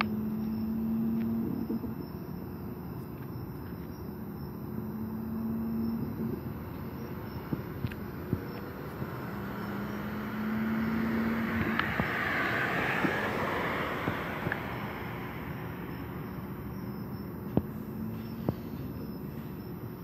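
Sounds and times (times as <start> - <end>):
steady low hum: 0.0 - 20.0
car driving past: 6.9 - 19.2.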